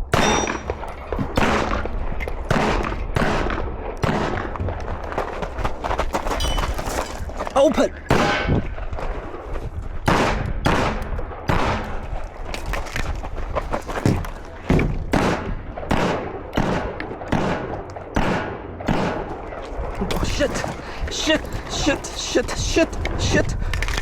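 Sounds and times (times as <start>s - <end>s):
sharp gunshots: 0.0s - 4.6s, 7.9s - 8.9s, 10.0s - 12.1s, 14.7s - 19.6s.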